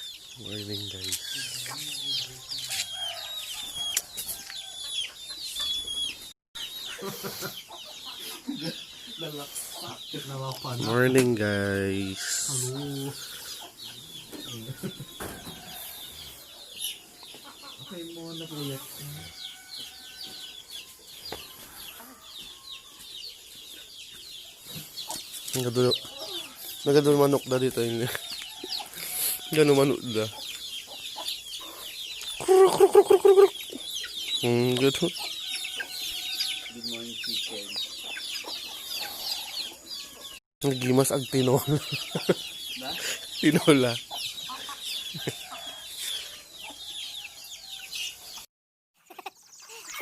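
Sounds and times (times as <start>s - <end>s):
chickens clucking: 0.0s - 50.0s.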